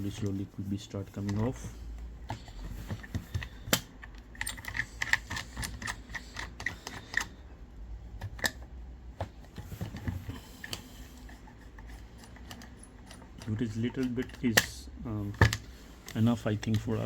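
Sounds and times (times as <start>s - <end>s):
prying tools clicking on phone: 3.0s - 7.5s.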